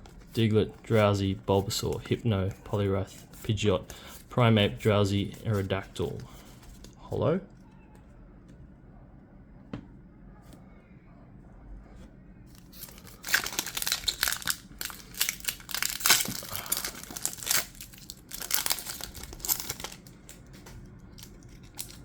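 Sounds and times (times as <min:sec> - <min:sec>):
foil wrapper tearing and crinkling: 0:12.6 - 0:20.4, 0:21.2 - 0:22.0.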